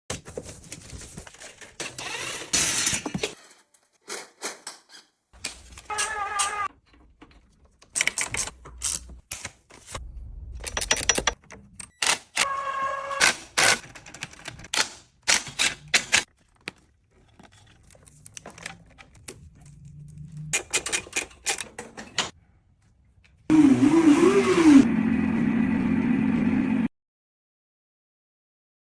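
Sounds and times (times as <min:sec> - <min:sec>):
short squeaky rasp: 0:05.9 - 0:06.7.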